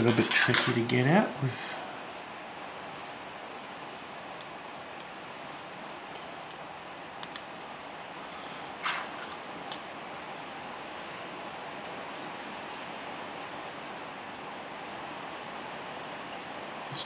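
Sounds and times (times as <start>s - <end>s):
steady hiss: 0.0s - 17.0s
scraping click: 8.8s - 9.4s.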